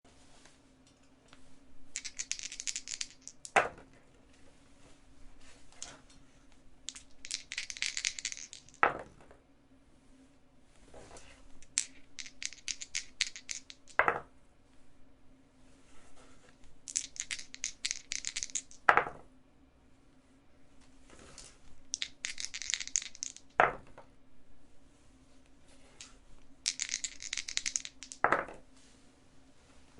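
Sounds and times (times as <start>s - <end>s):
dice clattering: 1.9s - 3.8s, 6.9s - 9.2s, 11.6s - 14.3s, 16.9s - 19.2s, 21.3s - 24.0s, 26.0s - 28.6s.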